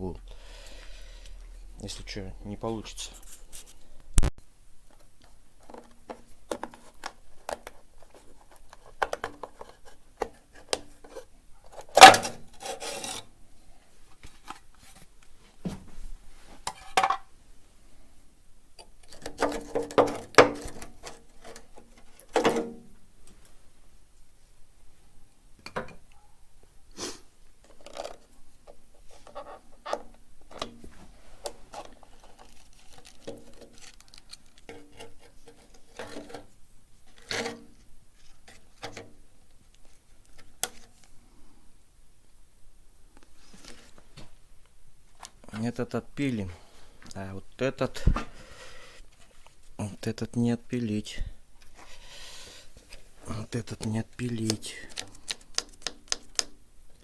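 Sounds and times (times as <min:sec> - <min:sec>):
hand work clicks and rubbing: 0:53.8 - 0:57.0.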